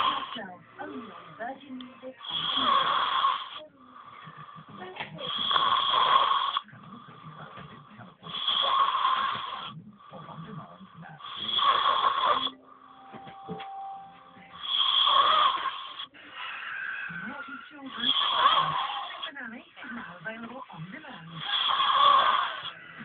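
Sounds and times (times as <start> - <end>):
boy snoring loudly: 0.0 - 1.0, 2.2 - 6.6, 8.2 - 9.7, 11.2 - 12.6, 14.5 - 16.1, 16.9 - 19.3, 21.4 - 22.8.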